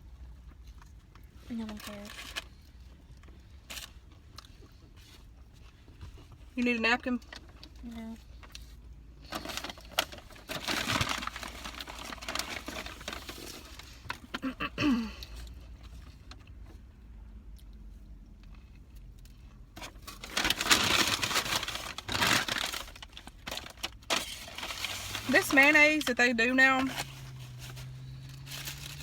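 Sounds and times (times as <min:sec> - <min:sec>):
paper wrappers rustling: 0:01.4 - 0:02.6, 0:09.2 - 0:14.4, 0:19.8 - 0:29.0.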